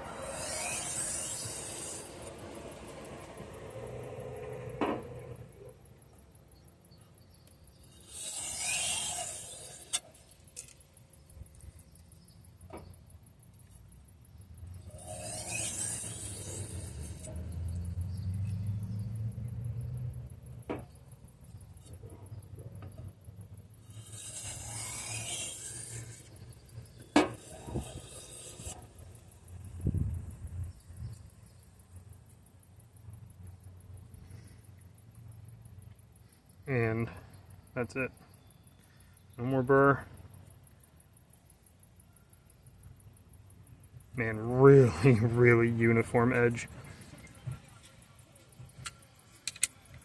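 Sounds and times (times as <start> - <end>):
knife scraping on sharpening stone: 7.9 - 10.7, 14.9 - 17.5, 23.9 - 29.1
sharp click: 48.8 - 50.0.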